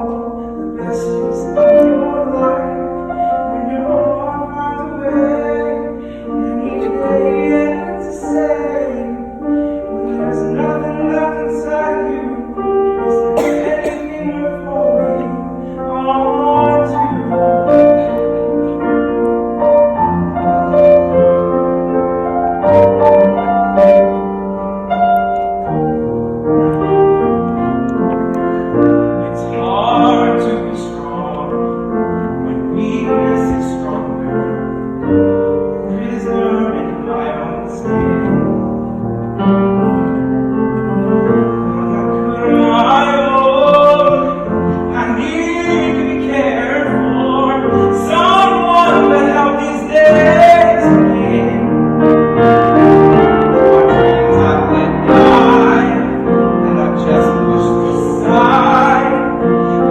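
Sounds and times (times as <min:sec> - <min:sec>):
person singing: 0:00.0 - 0:19.4, 0:40.8 - 0:59.9
piano playing: 0:00.0 - 0:59.9.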